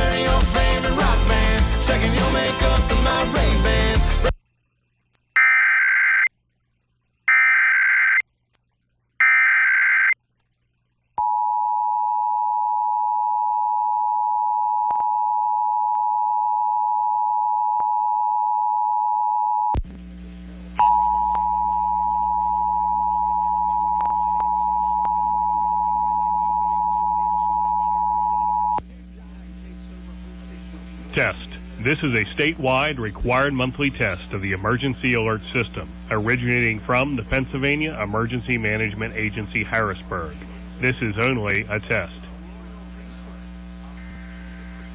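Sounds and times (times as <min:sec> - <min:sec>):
warbling digital header tones: 0:05.4 - 0:06.3, 0:07.3 - 0:08.2, 0:09.2 - 0:10.2
low hum: 0:11.2 - 0:44.9.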